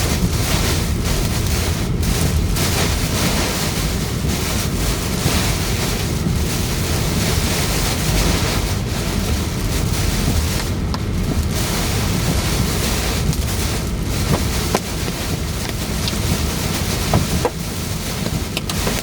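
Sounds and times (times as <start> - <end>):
heavy rain and wind on car: 0.0 - 19.0.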